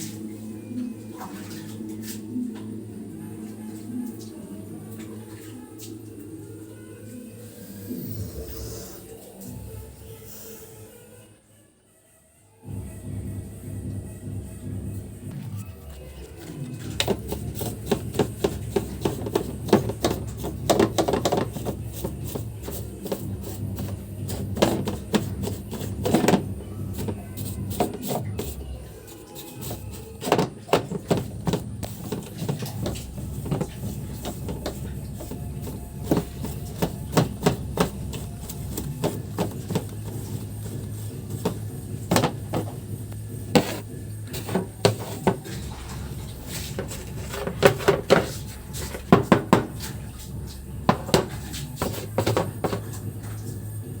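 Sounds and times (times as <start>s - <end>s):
washing machine motor humming: 12.7s - 54.0s.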